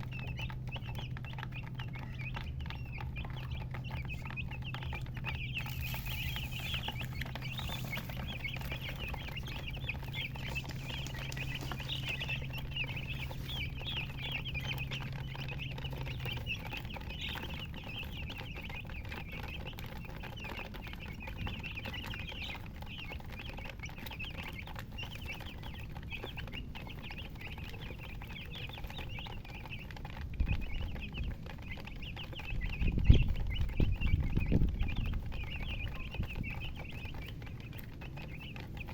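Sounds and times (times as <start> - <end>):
chicks peeping: 0.0 - 38.9
low steady hum: 0.0 - 38.9.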